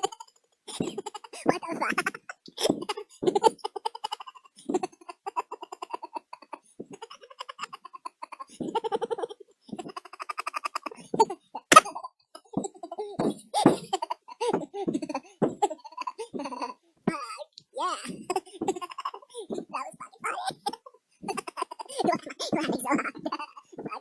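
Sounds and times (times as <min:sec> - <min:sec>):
sped-up high-pitched laughter: 0:00.0 - 0:24.0.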